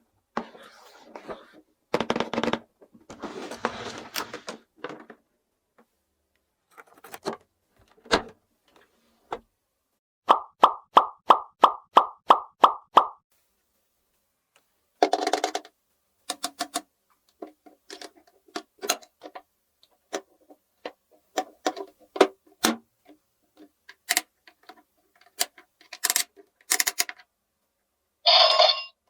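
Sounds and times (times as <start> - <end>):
plastic toy pieces clicking: 15.0 - 15.7, 16.3 - 16.9, 23.9 - 27.2.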